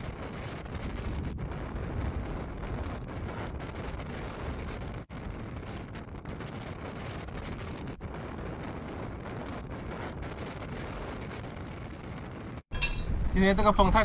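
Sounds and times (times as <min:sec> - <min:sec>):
strong wind buffeting microphone: 0:00.0 - 0:13.8.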